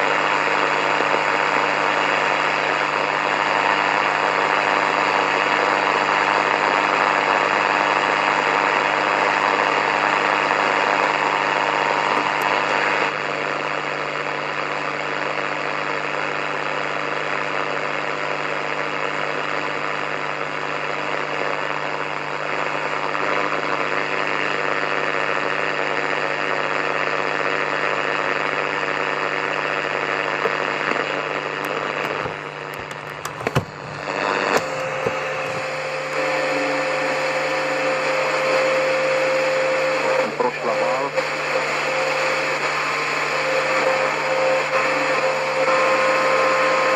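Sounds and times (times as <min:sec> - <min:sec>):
radio static hiss: 0:00.0 - 0:46.9
crackles and clicks: 0:30.4 - 0:36.3.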